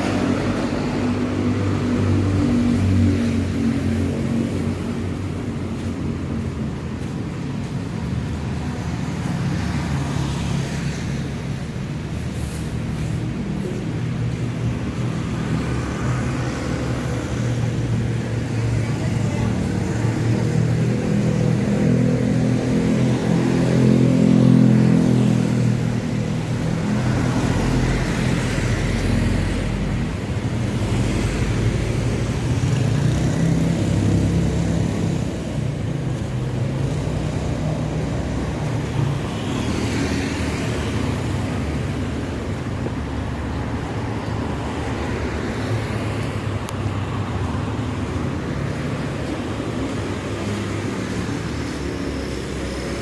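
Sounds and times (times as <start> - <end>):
traffic hum: 0.0 - 53.0
vehicles passing: 0.0 - 53.0.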